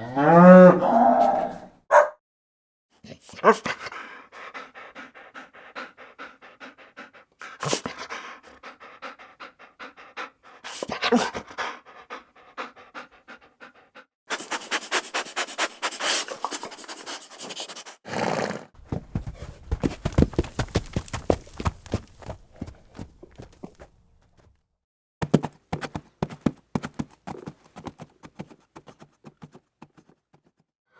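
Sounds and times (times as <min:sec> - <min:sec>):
dog panting: 0:03.4 - 0:18.0, 0:18.8 - 0:23.9.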